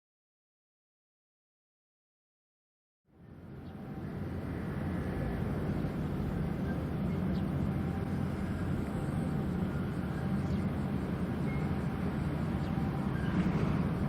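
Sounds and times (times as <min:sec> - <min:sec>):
faint steady tones: 0:03.1 - 0:14.0
tugboat diesel engines droning: 0:03.1 - 0:14.0.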